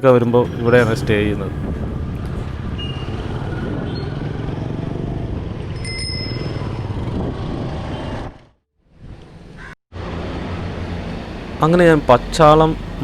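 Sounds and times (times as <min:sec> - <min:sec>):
road and wind rumble: 0:00.0 - 0:13.0
street traffic: 0:00.0 - 0:13.0
short high ringing tone: 0:05.8 - 0:06.8.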